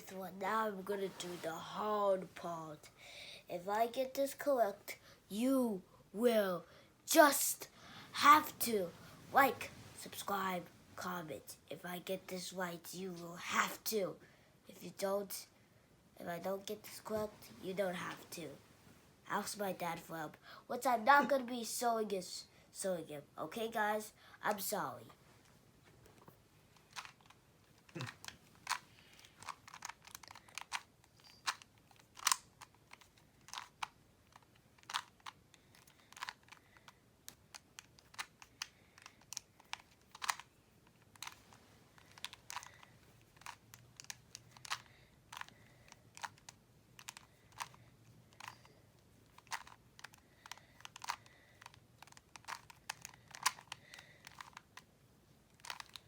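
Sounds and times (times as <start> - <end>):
puzzle cube layers clicking: 26.8 - 54.9, 55.5 - 56.0.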